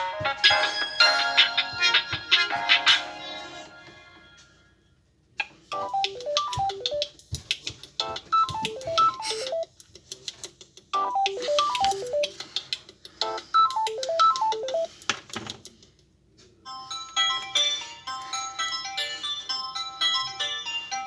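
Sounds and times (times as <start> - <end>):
chordal phone ringtone: 0.0 - 4.4, 5.7 - 7.1, 8.2 - 9.7, 11.0 - 12.4, 13.2 - 14.9, 16.7 - 21.0
melodic phone ringtone: 0.0 - 4.4, 5.7 - 7.2, 8.0 - 9.7, 11.0 - 12.4, 13.2 - 14.9, 16.7 - 21.0.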